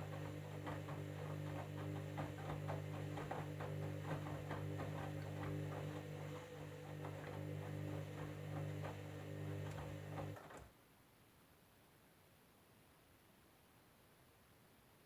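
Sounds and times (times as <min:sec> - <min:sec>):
drum clicks and knocks: 0:00.0 - 0:10.6
washing machine motor hum: 0:00.0 - 0:10.7.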